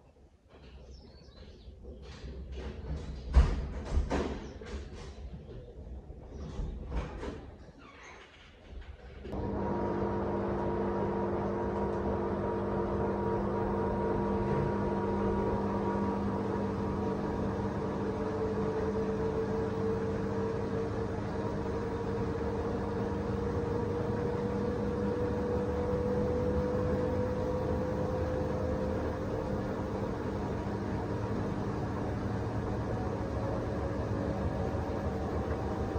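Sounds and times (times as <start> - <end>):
washer-dryer humming: 9.3 - 35.9.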